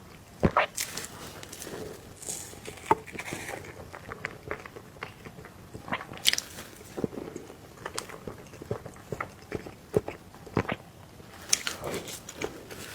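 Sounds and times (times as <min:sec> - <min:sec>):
person chewing cake: 0:00.0 - 0:12.9.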